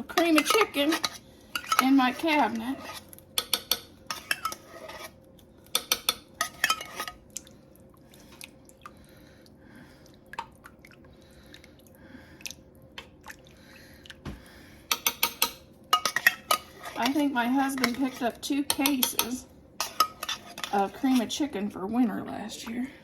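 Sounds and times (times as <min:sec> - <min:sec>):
utensil clinking against cookware: 0:00.0 - 0:04.6, 0:14.9 - 0:21.4.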